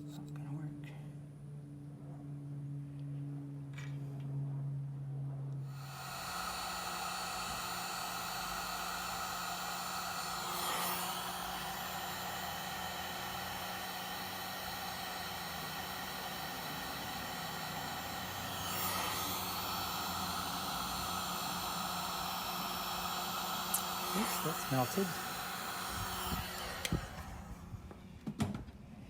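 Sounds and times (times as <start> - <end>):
heat gun blowing: 5.7 - 28.1.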